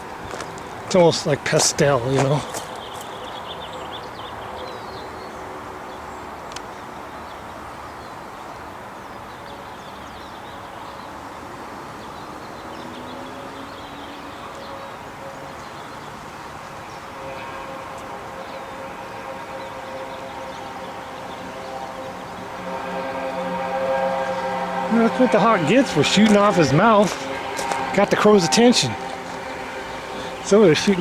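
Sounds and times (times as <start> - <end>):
mechanical drone: 18.2 - 31.0.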